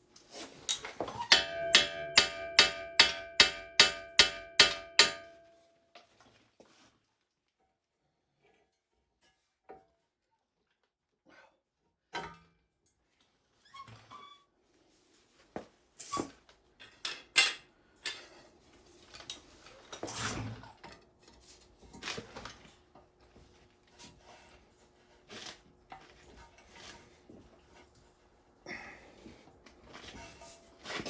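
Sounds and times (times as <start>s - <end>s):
metal clanks and knocks: 0.7s - 5.5s.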